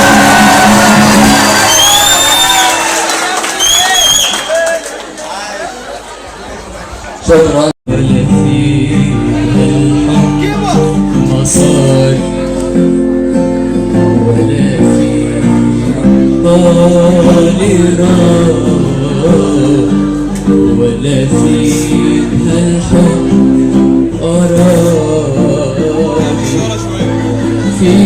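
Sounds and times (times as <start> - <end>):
man singing: 0.0 - 1.6, 7.2 - 28.0
plucked string instrument: 7.9 - 28.0.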